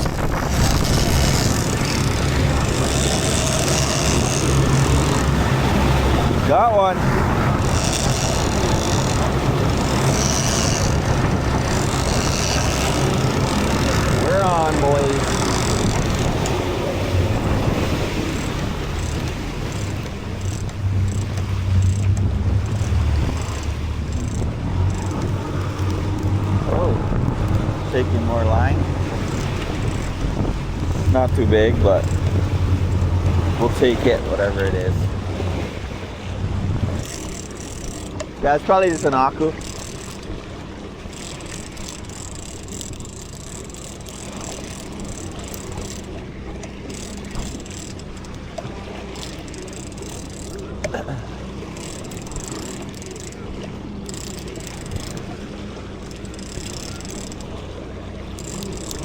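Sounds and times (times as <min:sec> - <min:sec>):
wind noise: 0:00.0 - 0:37.2
boat engine rumble: 0:00.0 - 0:59.0
water noise: 0:00.0 - 0:59.0.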